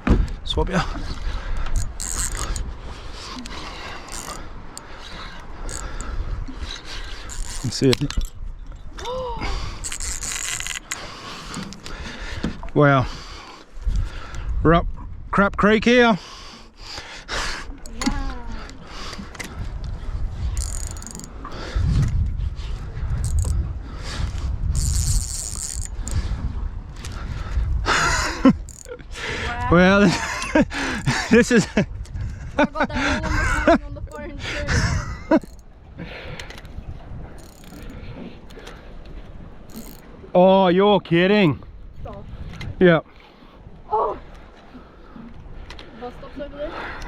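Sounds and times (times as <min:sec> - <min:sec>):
fishing reel clicking grind: 0:01.6 - 0:02.7, 0:03.4 - 0:06.2, 0:06.8 - 0:08.4, 0:09.8 - 0:11.9, 0:20.6 - 0:21.5, 0:23.1 - 0:23.7, 0:24.7 - 0:26.4, 0:28.0 - 0:29.0, 0:35.0 - 0:35.7, 0:37.4 - 0:38.8, 0:39.6 - 0:40.1.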